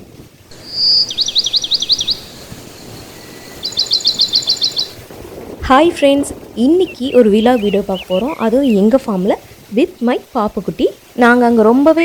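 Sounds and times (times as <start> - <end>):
bird singing: 0.5 - 5.0, 6.6 - 9.3.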